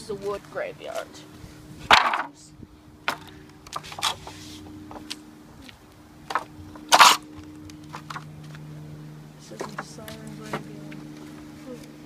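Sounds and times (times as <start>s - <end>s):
low hum: 0.0s - 12.0s
wooden boards knocking and scraping: 1.9s - 2.3s.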